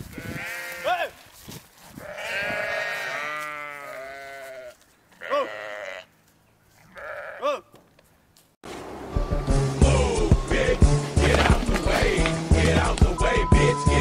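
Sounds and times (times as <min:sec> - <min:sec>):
livestock bleating: 0:00.0 - 0:01.2, 0:01.9 - 0:07.7.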